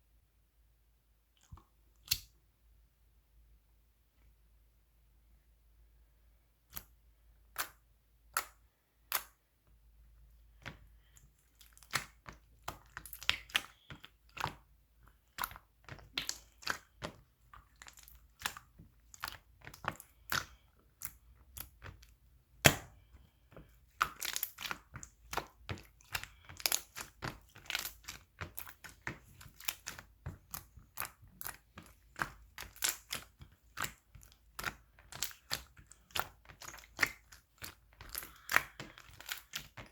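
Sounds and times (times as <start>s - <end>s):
slime crackling and popping: 11.5s - 14.6s, 15.2s - 23.1s, 23.9s - 39.9s.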